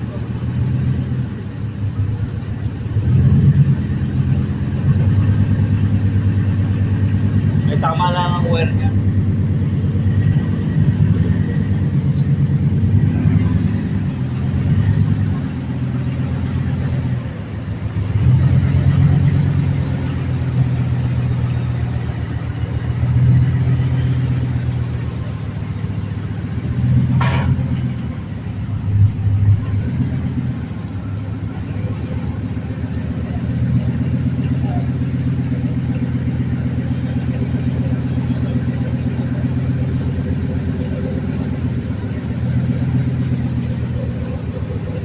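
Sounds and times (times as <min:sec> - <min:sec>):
engine running rough: 0:00.0 - 0:45.0.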